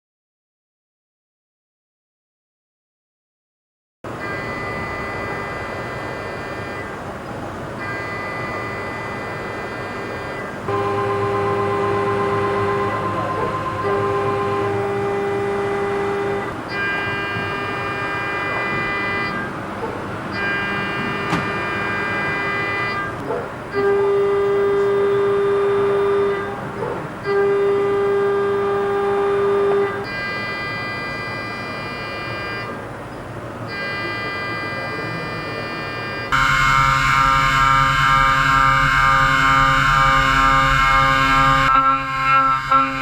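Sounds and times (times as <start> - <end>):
milling machine cutting whine: 4.1 - 26.6, 33.6 - 43.0.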